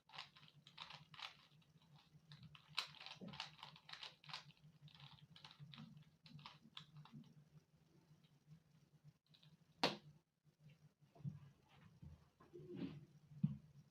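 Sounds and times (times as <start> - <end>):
puzzle cube clicking: 2.6 - 5.6.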